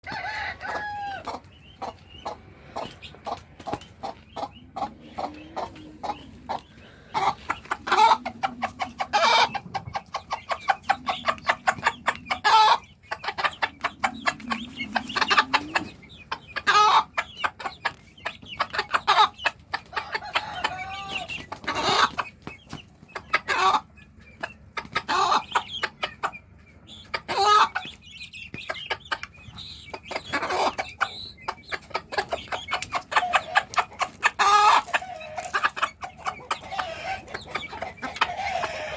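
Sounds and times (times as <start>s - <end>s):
hen clucking: 0.0s - 38.9s.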